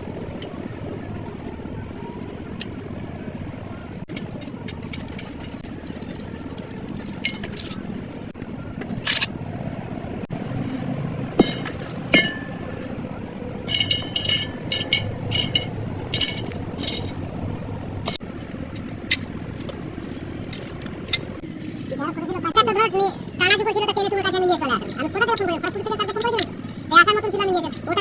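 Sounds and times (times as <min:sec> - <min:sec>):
steady low rumble: 0:00.0 - 0:21.6
metal tools clinking and clanking: 0:04.1 - 0:08.2, 0:08.8 - 0:09.4, 0:10.7 - 0:13.0, 0:13.6 - 0:21.4.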